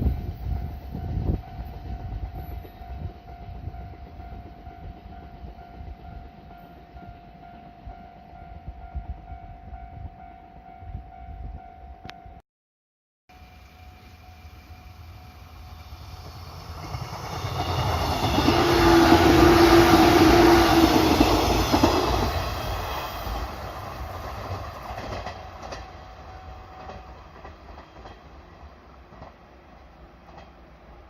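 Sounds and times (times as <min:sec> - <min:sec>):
train wheels rumbling on rails: 0:13.4 - 0:31.0.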